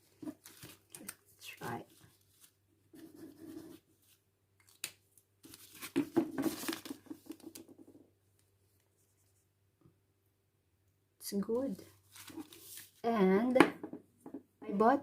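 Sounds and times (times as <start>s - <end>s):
marker scratching on paper: 2.9s - 3.8s.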